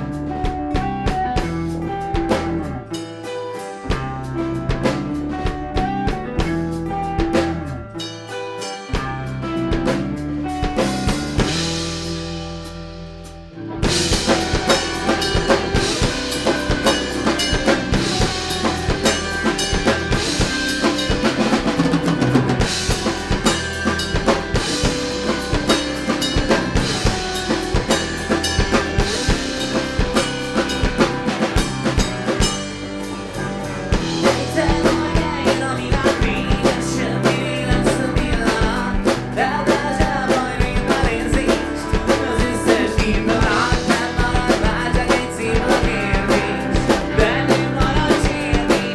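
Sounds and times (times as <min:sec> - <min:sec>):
band playing a song: 0:00.0 - 0:48.9
bass drum and snare beating: 0:13.8 - 0:48.9.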